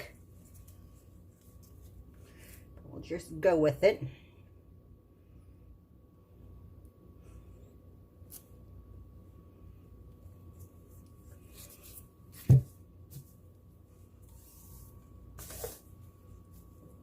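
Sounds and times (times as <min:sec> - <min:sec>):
faint scrapes and rubbing: 0:14.2 - 0:16.9.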